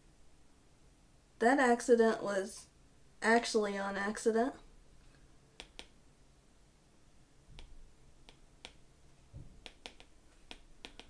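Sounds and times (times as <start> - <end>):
soft low thumps: 9.3 - 9.6
stylus tapping on glass screen: 9.4 - 11.0.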